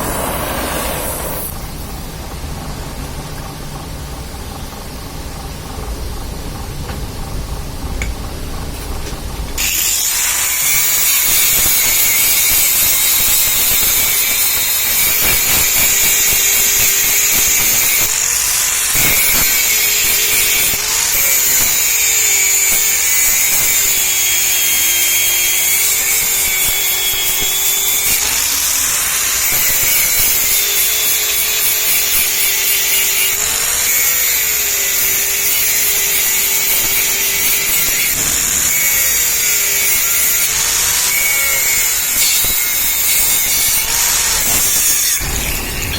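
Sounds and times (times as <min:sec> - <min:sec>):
electric power tool on metal: 0:09.6 - 0:45.9.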